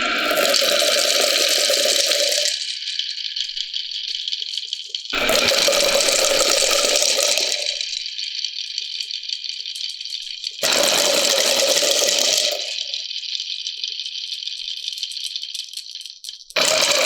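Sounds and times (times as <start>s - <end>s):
marbles rattling along track: 10.6s - 12.9s, 16.6s - 17.0s.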